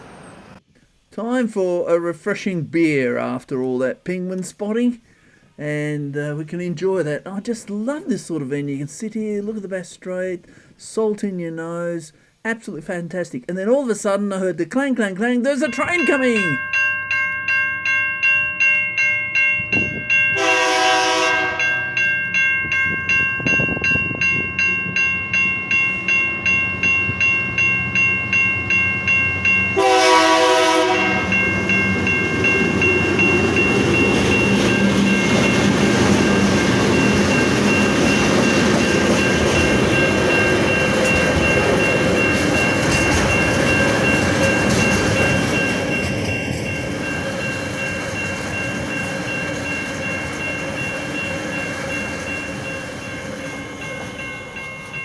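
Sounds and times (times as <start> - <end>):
train rumbling past: 0.0 - 0.7, 15.6 - 55.0
level-crossing bell clanging: 15.1 - 55.0
train horn: 20.4 - 21.9, 29.8 - 31.4.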